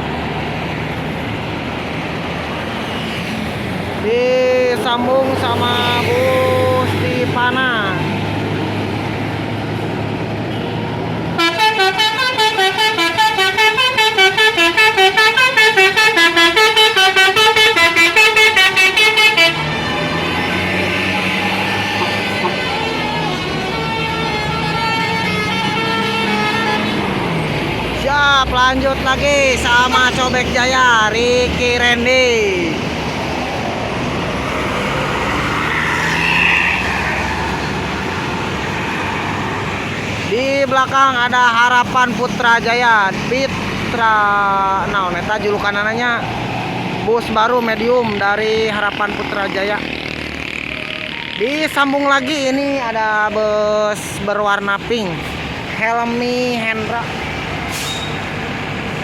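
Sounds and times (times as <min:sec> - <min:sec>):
bus engine humming: 0:00.0 - 0:59.0
bus horn playing a fast tune: 0:11.4 - 0:27.2.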